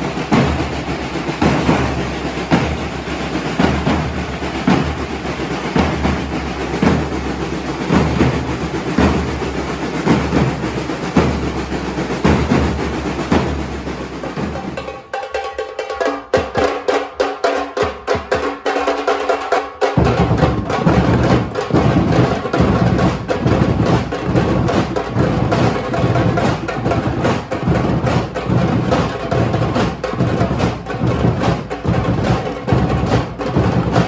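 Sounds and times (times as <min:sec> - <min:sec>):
deeper drums: 0:00.0 - 0:15.1, 0:19.9 - 0:34.0
percussion ensemble playing: 0:00.0 - 0:34.0.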